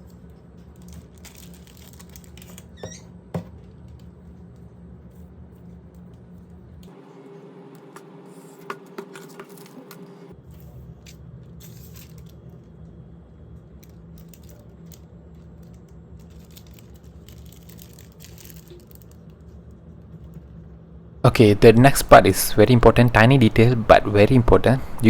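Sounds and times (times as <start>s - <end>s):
film rustling: 0.6s - 4.0s, 13.8s - 19.4s
plastic parts clicking: 0.8s - 2.8s
steady low hum: 18.8s - 25.0s.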